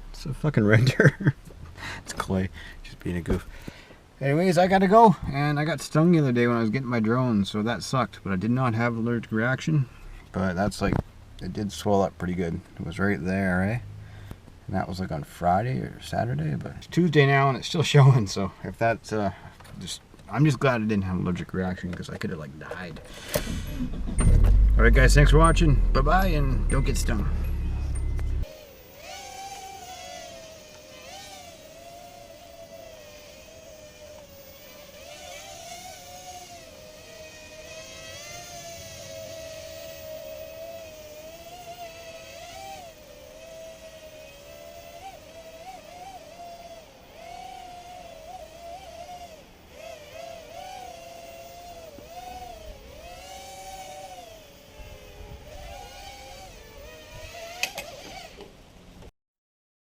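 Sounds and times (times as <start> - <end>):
drone motors whining: 22.7 - 58.6.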